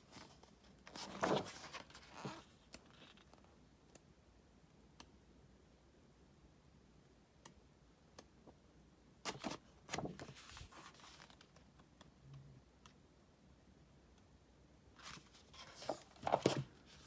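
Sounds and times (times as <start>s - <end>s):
packaging rustling and scraping: 15.0s - 17.0s.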